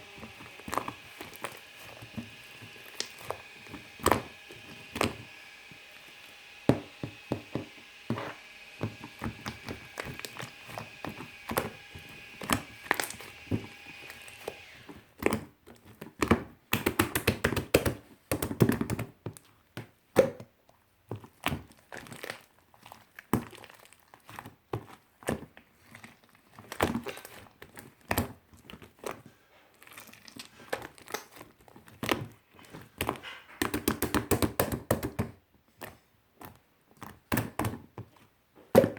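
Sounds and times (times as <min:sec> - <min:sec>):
slime squishing: 0:00.0 - 0:38.9
slime bubbles popping and crackling: 0:00.2 - 0:05.2, 0:08.8 - 0:14.4, 0:21.1 - 0:38.8.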